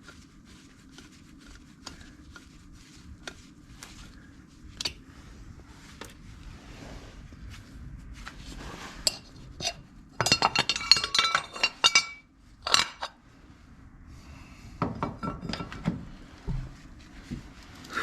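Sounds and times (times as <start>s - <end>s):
metal parts and tools clinking: 9.1s - 13.2s.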